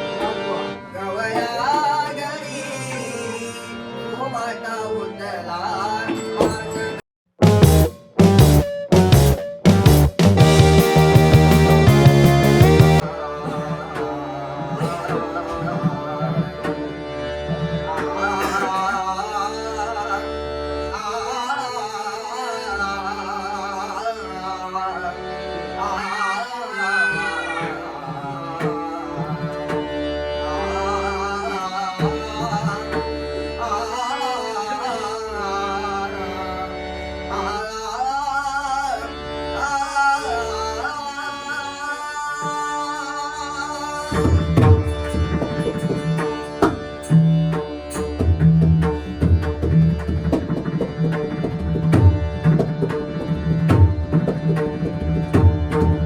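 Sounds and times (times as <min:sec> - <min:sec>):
person singing ornamented lines: 0:25.8 - 0:29.6.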